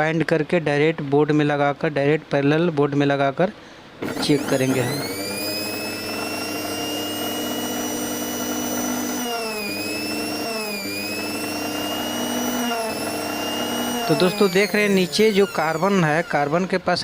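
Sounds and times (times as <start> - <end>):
mixer grinder motor whining: 4.0 - 17.0.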